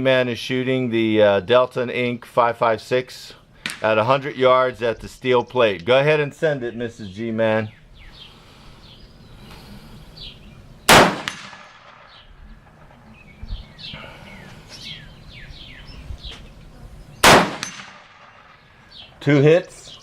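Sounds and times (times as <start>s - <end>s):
rifle shot: 10.9s - 12.9s, 17.2s - 18.6s.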